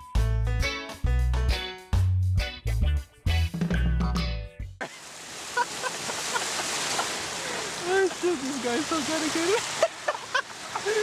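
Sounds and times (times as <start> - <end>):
guitar-led music: 0.0 - 4.7.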